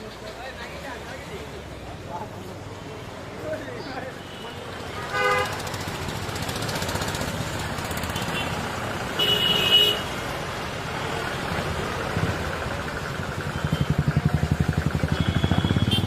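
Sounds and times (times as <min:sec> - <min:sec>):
traffic noise: 0:00.0 - 0:16.0
car horn toot: 0:04.3 - 0:05.5, 0:09.2 - 0:10.0, 0:15.1 - 0:16.0
low engine pulsing: 0:12.1 - 0:16.0.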